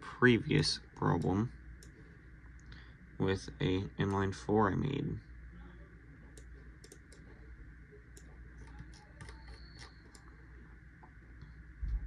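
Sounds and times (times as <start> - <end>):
low room hum: 0.0 - 12.0
computer mouse clicks: 6.4 - 7.3.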